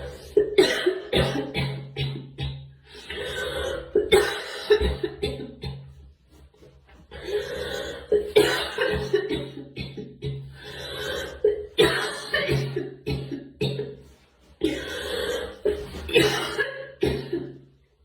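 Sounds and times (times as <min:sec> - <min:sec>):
girl coughing: 0:00.3 - 0:02.2, 0:03.9 - 0:05.6, 0:08.1 - 0:10.2, 0:11.3 - 0:13.9, 0:15.6 - 0:17.6.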